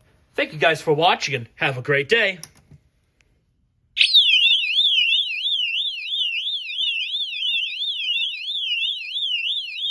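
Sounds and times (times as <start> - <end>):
fire alarm horn warbling: 4.0 - 9.9.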